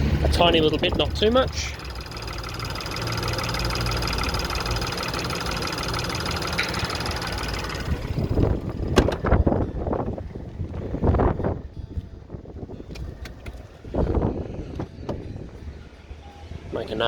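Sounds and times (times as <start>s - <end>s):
car engine idling: 0.0s - 11.6s.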